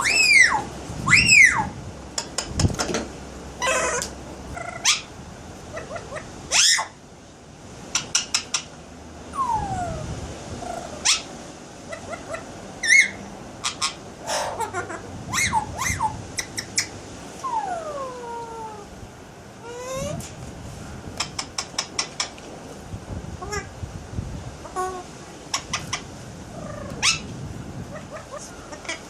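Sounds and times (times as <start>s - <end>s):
parakeet shrill calls: 0.0s - 1.7s, 3.6s - 4.0s, 4.6s - 5.1s, 5.8s - 7.0s, 12.3s - 16.9s, 26.8s - 27.3s
parakeet clicks: 21.2s - 22.4s.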